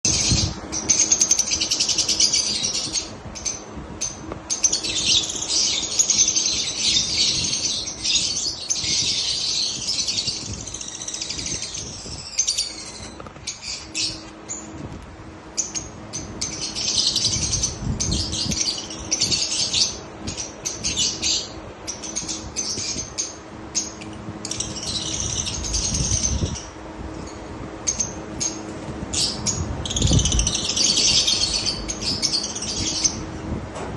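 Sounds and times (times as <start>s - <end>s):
parrots chattering and chirping: 15.6s - 33.2s.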